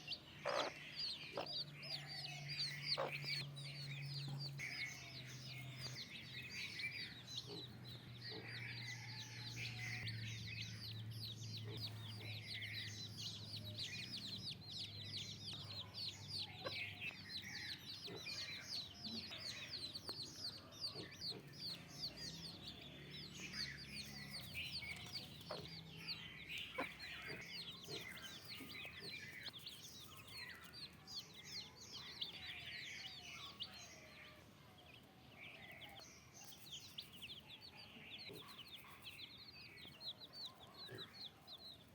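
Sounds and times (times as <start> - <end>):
chickens clucking: 0.0 - 1.6, 2.7 - 3.5, 17.8 - 19.4, 20.0 - 21.9, 22.5 - 30.6.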